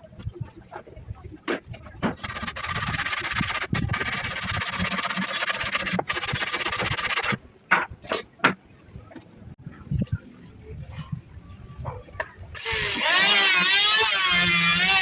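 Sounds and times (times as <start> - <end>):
wood being sawn: 2.2 - 7.4, 12.6 - 15.0.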